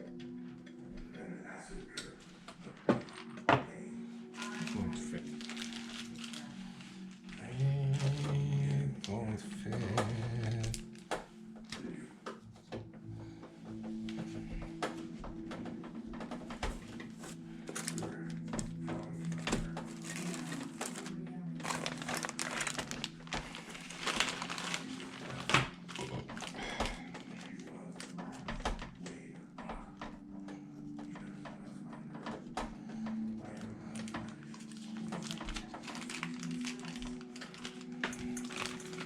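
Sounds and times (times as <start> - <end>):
computer parts clicking and rustling: 13.6 - 39.0.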